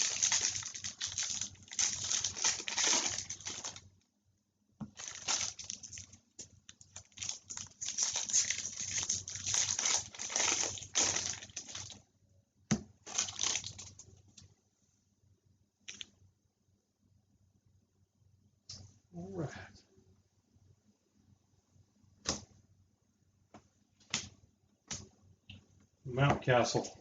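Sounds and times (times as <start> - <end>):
foil wrappers crinkling: 0.0 - 3.8, 4.9 - 12.0, 13.0 - 14.1.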